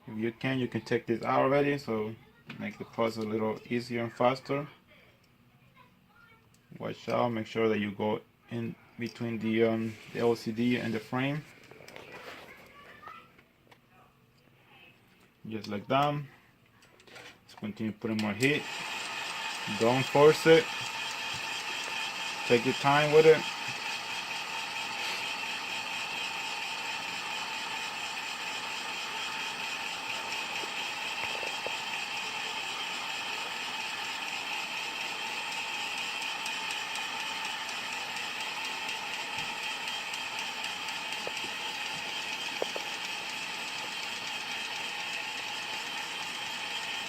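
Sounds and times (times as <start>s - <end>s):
heat gun blowing: 18.4s - 47.0s.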